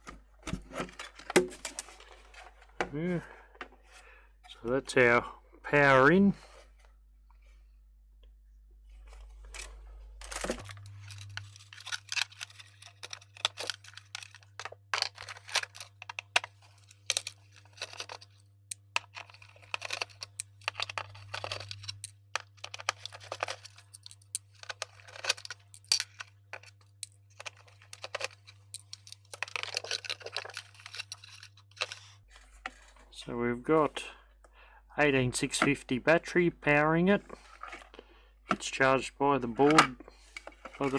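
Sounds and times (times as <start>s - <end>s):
low steady hum: 8.6s - 32.7s
plastic parts clicking and rustling: 9.1s - 32.9s.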